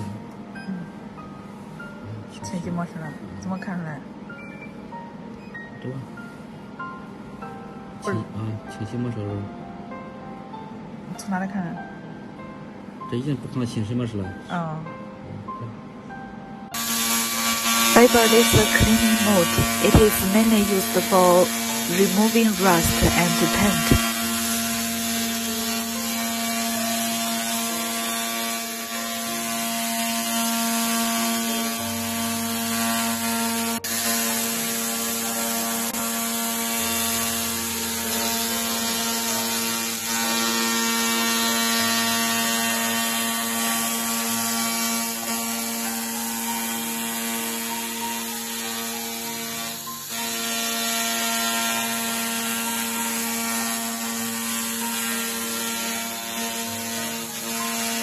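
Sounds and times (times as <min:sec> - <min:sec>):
laser cleaner buzzing and crackling: 0:16.8 - 0:58.0.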